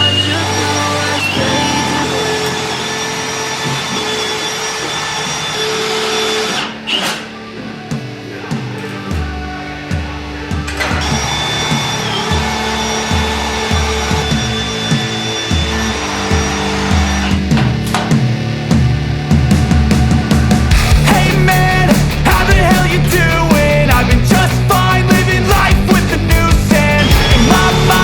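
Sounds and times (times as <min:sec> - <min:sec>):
pop music with synth tones: 0:00.0 - 0:28.0
repeating bass beat: 0:18.3 - 0:28.0.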